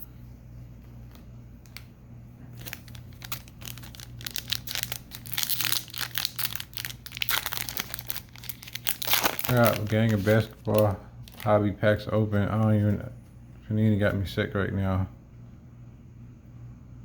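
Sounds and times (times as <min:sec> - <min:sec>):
low steady hum: 0:00.0 - 0:17.0
foil wrapper crinkling and tearing: 0:02.5 - 0:11.6.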